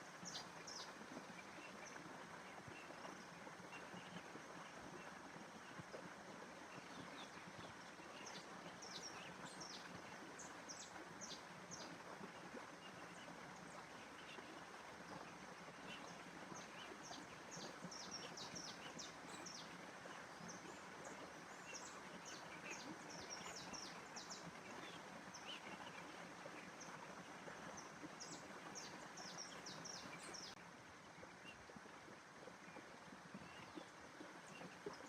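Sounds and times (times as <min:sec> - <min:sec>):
small birds chirping: 0:00.2 - 0:04.2, 0:15.1 - 0:26.0, 0:27.7 - 0:30.6.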